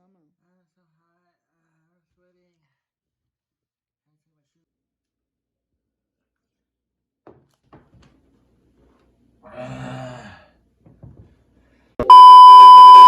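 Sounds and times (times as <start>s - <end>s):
person sighing: 9.5s - 10.5s
steady electronic beep: 12.0s - 13.0s.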